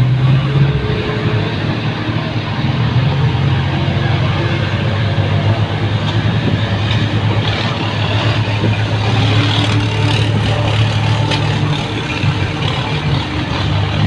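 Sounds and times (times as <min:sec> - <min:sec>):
pump engine running: 0:00.0 - 0:14.0.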